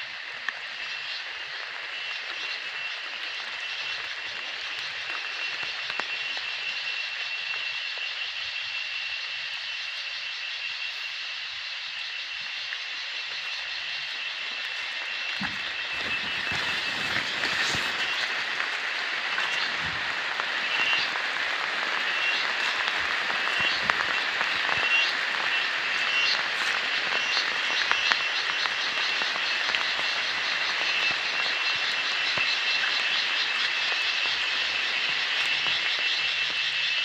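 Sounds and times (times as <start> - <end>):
steady rushing noise: 14.1 - 35.3.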